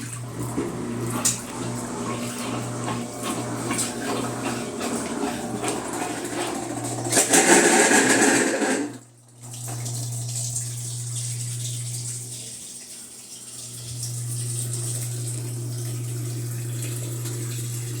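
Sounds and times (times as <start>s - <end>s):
water rushing in washing machine: 0.0s - 18.0s
low electrical hum: 8.9s - 18.0s.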